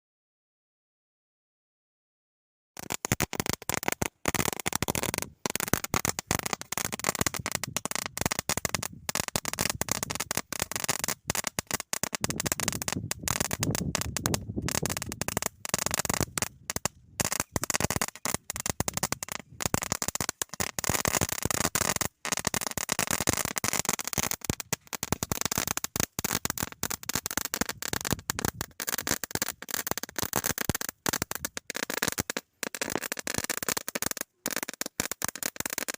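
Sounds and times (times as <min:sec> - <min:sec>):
firecracker string banging: 0:02.8 - 0:35.9.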